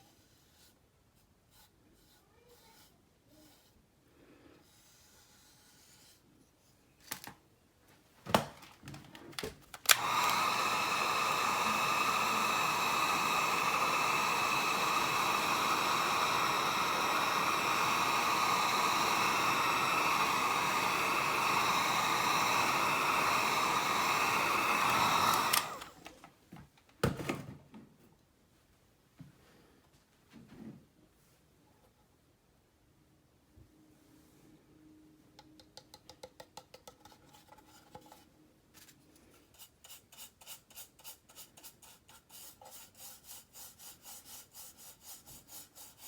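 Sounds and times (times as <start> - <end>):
hot-air dryer running: 9.8 - 26.2.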